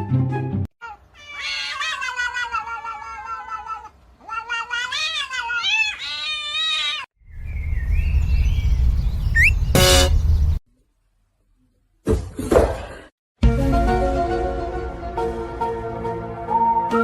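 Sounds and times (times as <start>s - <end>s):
cat yowling: 0.8s - 7.1s.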